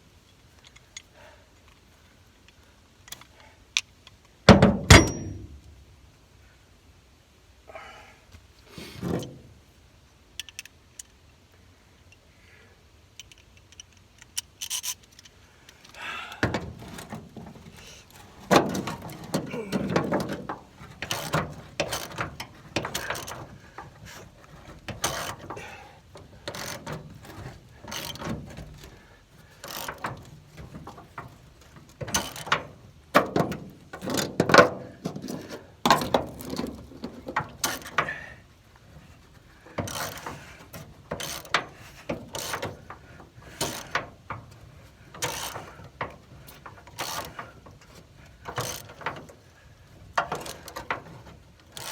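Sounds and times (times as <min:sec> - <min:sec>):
hand ratchet clicking: 0:13.2 - 0:16.5, 0:21.0 - 0:24.2, 0:24.9 - 0:25.7, 0:26.4 - 0:28.6, 0:29.6 - 0:30.3, 0:32.1 - 0:32.6, 0:39.8 - 0:41.6, 0:42.3 - 0:42.8, 0:43.5 - 0:44.0, 0:45.2 - 0:45.9, 0:46.5 - 0:47.6, 0:48.4 - 0:49.2.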